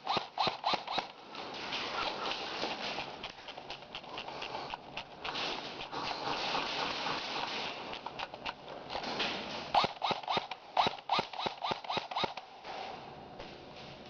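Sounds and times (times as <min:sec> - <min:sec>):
gear rustling and scraping: 0:00.0 - 0:12.4
airsoft gun shots: 0:09.7 - 0:12.8.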